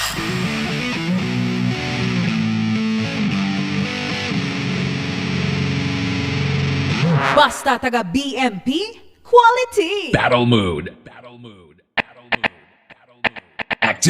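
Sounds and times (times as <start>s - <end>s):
distorted electric guitar: 0.0s - 7.8s, 12.0s - 14.0s.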